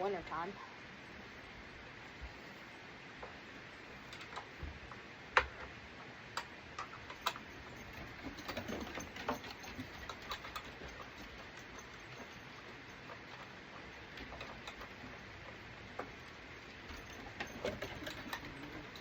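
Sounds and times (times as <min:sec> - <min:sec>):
hand tools clicking and tapping: 0:04.1 - 0:19.0.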